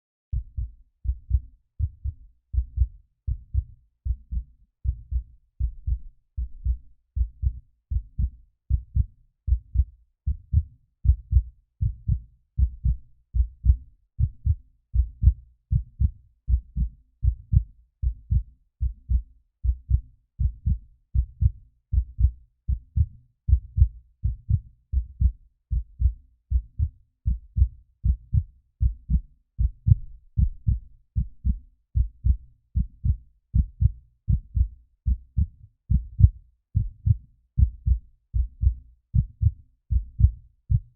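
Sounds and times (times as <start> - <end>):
heartbeat: 0.3 - 40.9.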